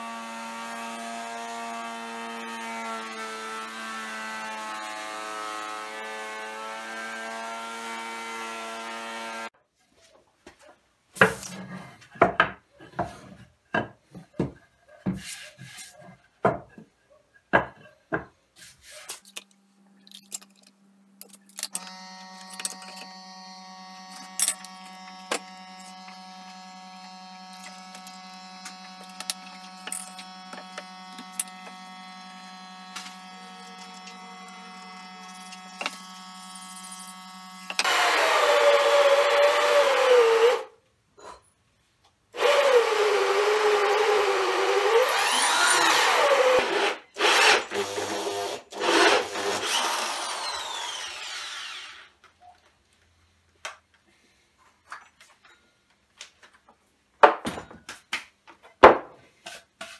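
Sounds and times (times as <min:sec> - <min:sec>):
wood knocking and tapping: 0:16.4 - 0:16.9
motor hum: 0:21.6 - 0:38.2
power tool whining: 0:21.6 - 0:40.7, 0:42.4 - 0:52.2.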